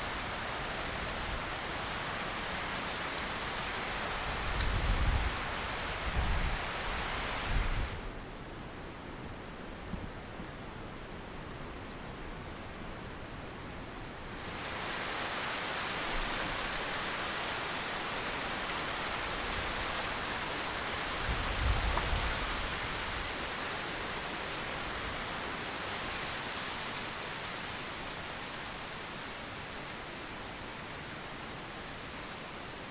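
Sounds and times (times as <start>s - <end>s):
wind rumble on microphone: 0.0s - 15.0s, 18.7s - 27.1s.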